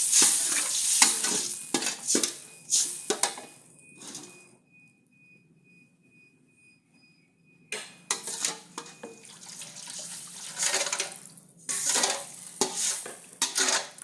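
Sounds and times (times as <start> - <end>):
water sloshing in a pan: 8.1 - 14.0.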